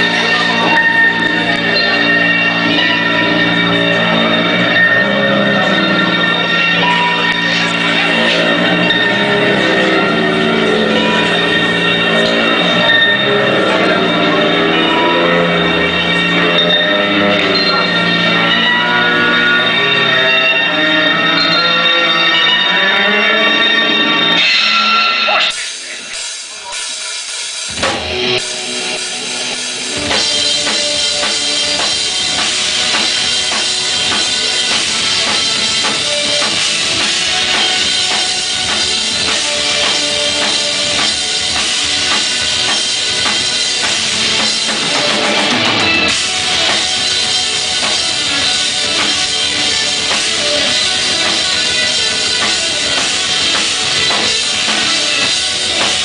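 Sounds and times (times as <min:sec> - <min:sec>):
live rock band playing: 0:00.0 - 0:56.0
drum kit with cymbals: 0:23.6 - 0:56.0.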